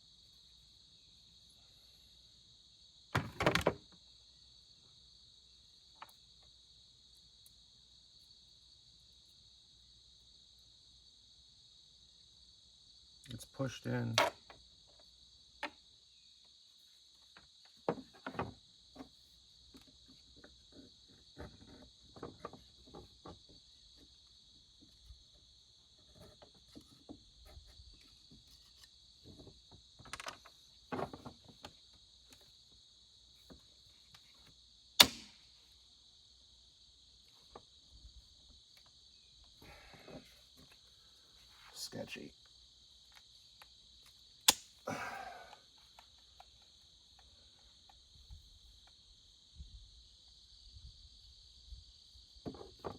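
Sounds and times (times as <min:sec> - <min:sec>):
crickets chirring: 0:00.0 - 0:52.9
sharp loud click: 0:35.0 - 0:35.5.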